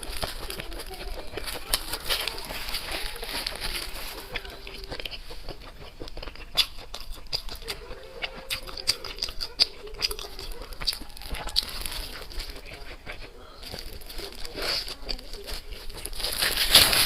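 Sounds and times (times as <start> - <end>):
wet mouth clicks: 0.0 - 16.9
mouth chewing and crunching food: 0.0 - 17.0.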